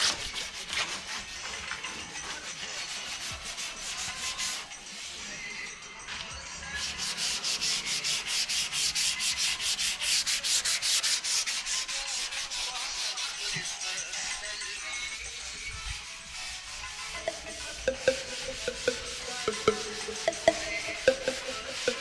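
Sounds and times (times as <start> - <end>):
sandpaper rubbing back and forth: 0.0 - 5.2, 6.8 - 14.4.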